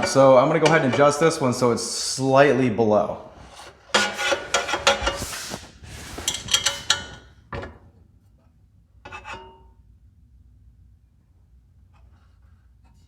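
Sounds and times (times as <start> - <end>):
metal scraping on metal: 3.4 - 7.3.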